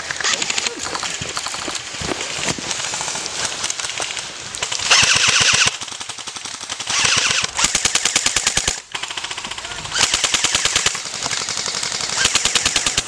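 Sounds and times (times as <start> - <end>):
airsoft guns firing full-auto: 3.4 - 13.0.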